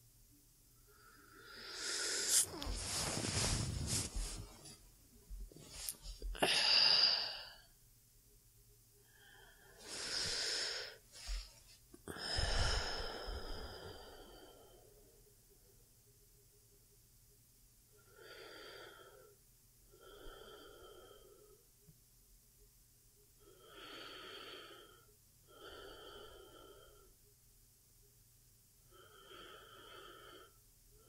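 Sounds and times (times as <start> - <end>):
woman breathing deeply: 0.9 - 4.7, 5.6 - 7.7, 9.0 - 15.0.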